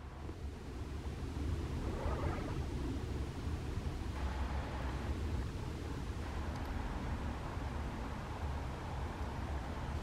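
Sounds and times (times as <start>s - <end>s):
faint hiss: 0.0s - 10.0s
low rumble: 0.7s - 4.3s.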